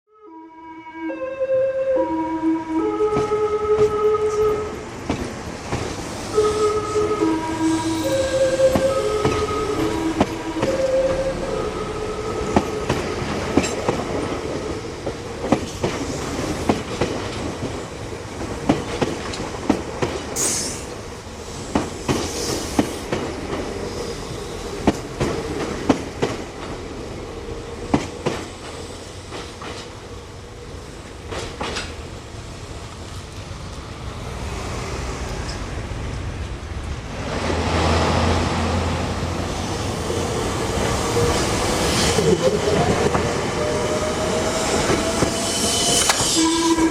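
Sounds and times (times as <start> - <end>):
train music horn: 0.1 - 4.9, 6.3 - 13.7, 43.6 - 46.9
high wheel squeals: 6.2 - 12.9, 43.5 - 46.9
train wheels clicking over rail joints: 12.5 - 26.9, 27.8 - 30.1, 31.2 - 32.1, 44.7 - 46.5.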